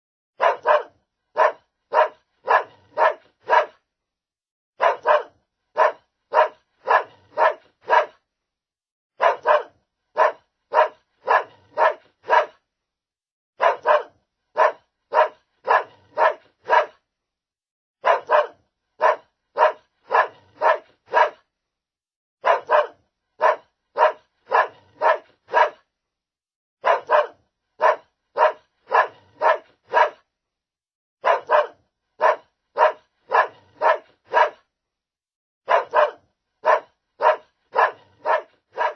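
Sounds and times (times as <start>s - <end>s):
dog barking: 0.4s - 3.8s, 4.8s - 8.2s, 9.2s - 12.6s, 13.6s - 17.0s, 18.0s - 21.5s, 22.4s - 25.9s, 26.8s - 30.3s, 31.2s - 34.7s, 35.6s - 38.9s.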